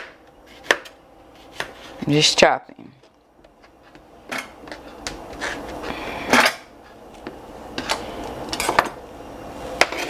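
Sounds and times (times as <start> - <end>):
knife chopping on cutting board: 0.0 - 2.0.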